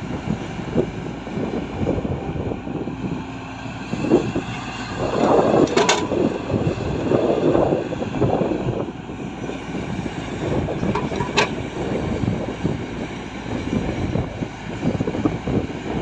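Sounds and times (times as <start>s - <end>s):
diesel machinery rumbling: 0.0s - 16.0s.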